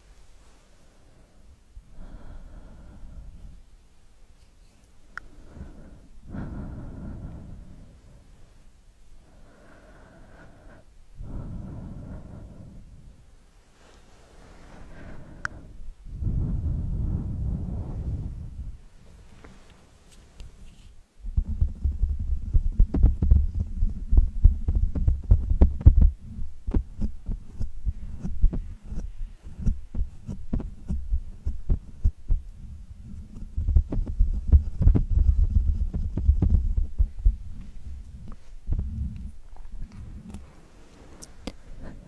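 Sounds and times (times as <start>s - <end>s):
heavy low rumbling: 15.7s - 19.0s, 21.2s - 40.4s.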